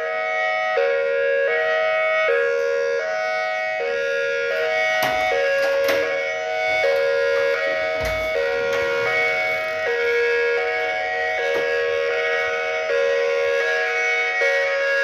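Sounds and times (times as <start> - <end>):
stepped multi-tone warning siren: 0.0 - 15.0
sharp knocks: 5.0 - 6.2.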